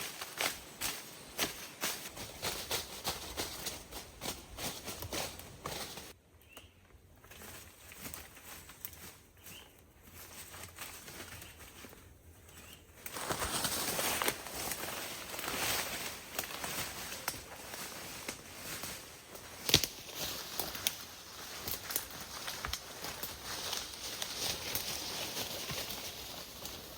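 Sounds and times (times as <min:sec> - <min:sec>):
crackling rustling noise: 0:00.0 - 0:06.2, 0:07.1 - 0:26.9.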